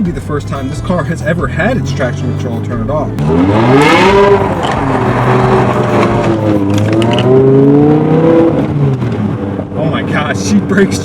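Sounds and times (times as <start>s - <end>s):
engine revving hard: 3.2s - 9.0s.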